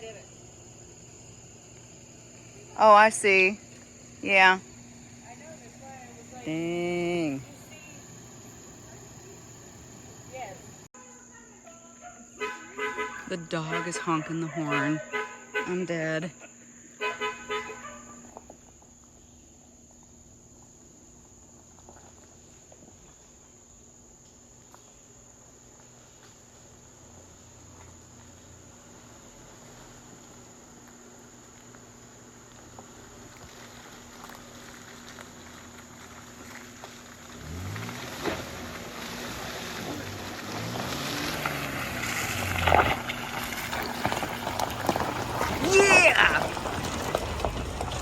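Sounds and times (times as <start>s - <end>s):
high-pitched insect chorus: 0.0s - 48.0s
vehicle engine revving: 35.1s - 48.0s.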